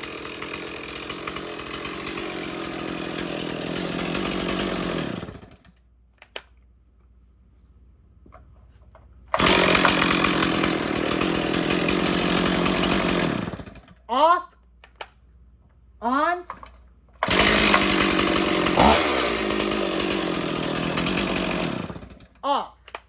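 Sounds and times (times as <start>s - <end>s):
chainsaw running: 0.0s - 5.8s, 9.3s - 14.0s, 17.2s - 22.4s
clicks: 6.2s - 6.7s, 14.8s - 15.2s.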